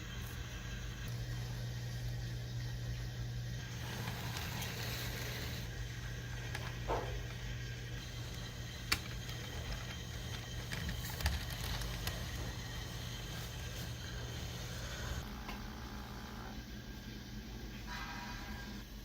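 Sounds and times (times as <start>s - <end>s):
model train humming: 0.0s - 18.0s.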